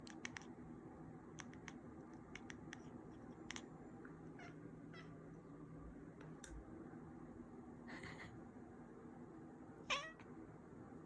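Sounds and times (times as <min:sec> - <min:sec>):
cat chattering clicks: 0:00.0 - 0:00.5, 0:01.4 - 0:03.7.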